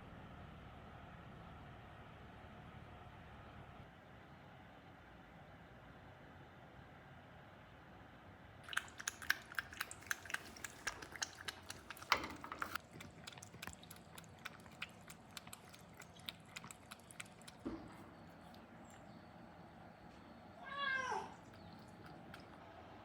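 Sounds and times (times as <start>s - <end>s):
cat crunching dry food: 8.8s - 17.6s.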